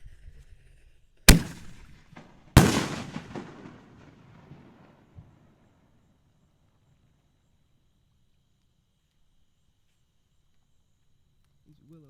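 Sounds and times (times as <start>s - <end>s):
firework shell burst: 1.3s - 5.0s.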